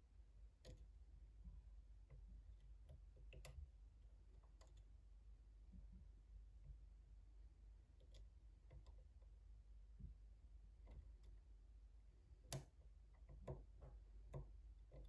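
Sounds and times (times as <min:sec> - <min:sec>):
lock pick clicks: 0:12.5 - 0:12.7.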